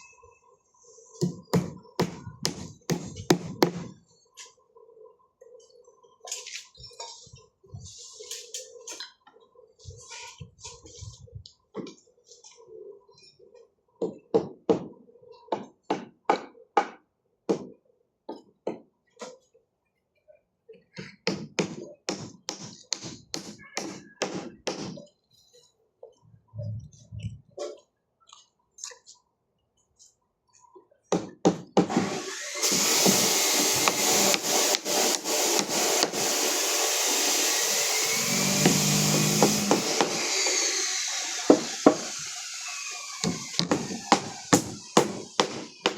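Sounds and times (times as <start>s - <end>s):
power tool running: 31.9s - 45.6s.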